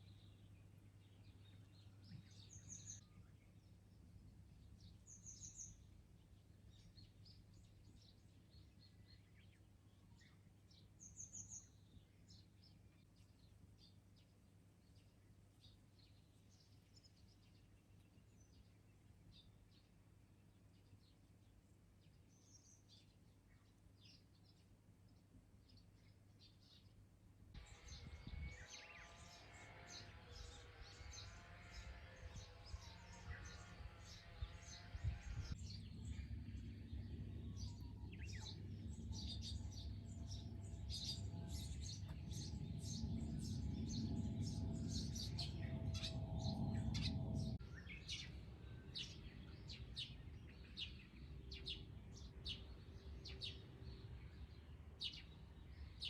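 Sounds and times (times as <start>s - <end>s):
small birds chirping: 0.0s - 56.0s
low background rumble: 34.4s - 51.2s.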